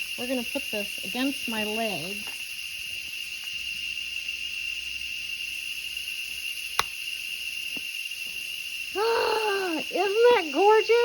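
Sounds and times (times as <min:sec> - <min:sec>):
insects droning: 0:00.0 - 0:11.0
sharp click: 0:06.8 - 0:07.0.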